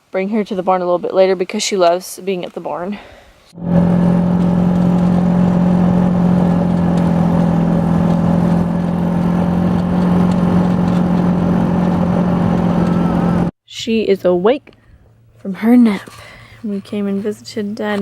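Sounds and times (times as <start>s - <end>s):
engine humming steadily: 3.5s - 13.5s.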